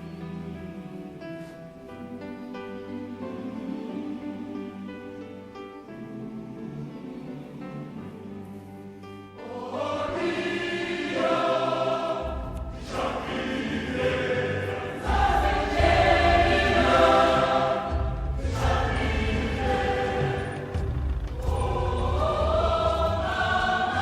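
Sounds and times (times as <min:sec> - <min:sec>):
choir singing held chords: 0:00.0 - 0:24.0
low bass rumble: 0:17.9 - 0:23.6.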